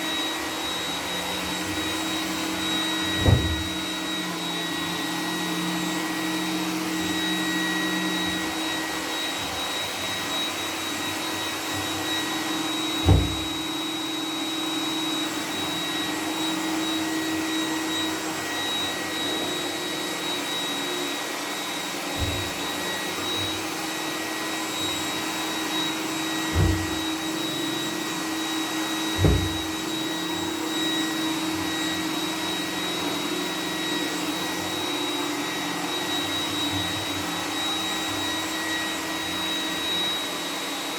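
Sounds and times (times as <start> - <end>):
robot vacuum whirring: 0.0 - 40.9
low thumps: 3.2 - 3.8, 13.0 - 13.6.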